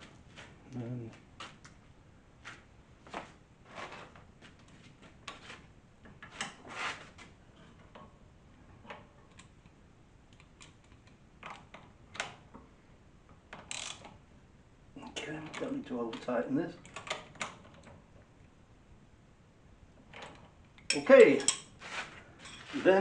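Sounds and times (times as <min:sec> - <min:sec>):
spanners clicking on metal: 0:20.8 - 0:21.7.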